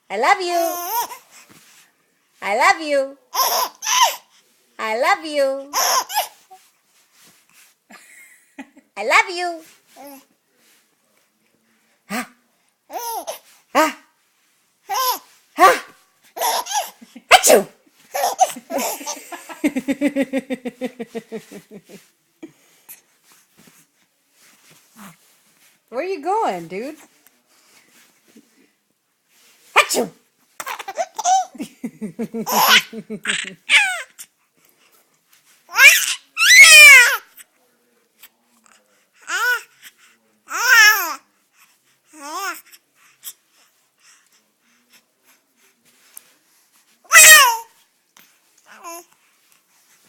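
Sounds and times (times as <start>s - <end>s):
baby babbling: 0.6s - 1.2s, 3.3s - 4.3s, 5.7s - 6.4s, 12.9s - 13.5s, 14.9s - 17.0s, 32.5s - 34.2s, 35.7s - 37.2s, 39.2s - 39.7s, 40.5s - 41.2s, 42.2s - 42.6s, 47.1s - 47.7s, 48.7s - 49.1s
baby laughing: 3.3s - 4.3s, 5.7s - 6.4s, 12.9s - 13.4s, 14.9s - 15.8s, 16.4s - 19.9s, 30.6s - 31.7s, 32.4s - 34.1s, 35.7s - 37.2s.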